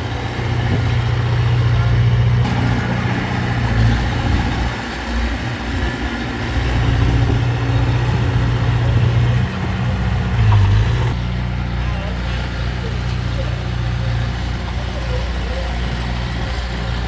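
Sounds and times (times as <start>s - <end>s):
heavy diesel engine running: 0.0s - 17.0s.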